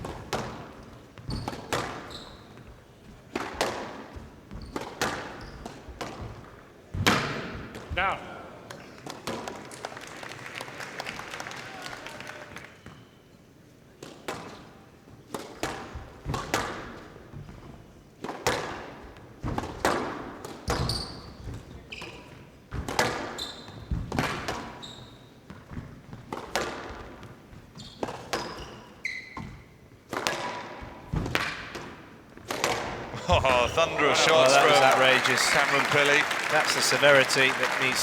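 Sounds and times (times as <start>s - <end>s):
court shoes squeaking: 1.2s - 2.6s, 27.8s - 29.7s.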